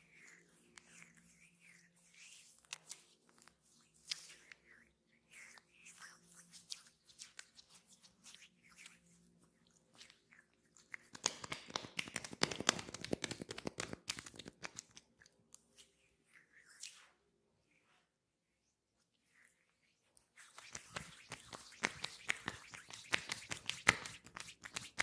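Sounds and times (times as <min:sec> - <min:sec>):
hands rubbing oiled skin: 0:00.1 - 0:18.1, 0:19.0 - 0:25.0.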